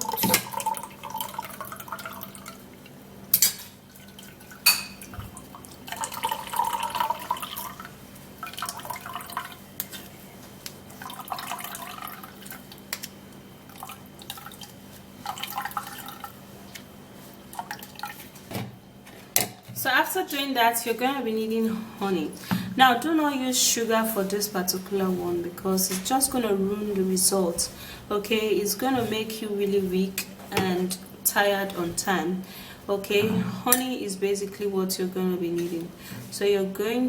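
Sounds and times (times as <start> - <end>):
liquid trickling and dripping: 0.0 - 3.0, 3.8 - 10.0, 10.6 - 16.9.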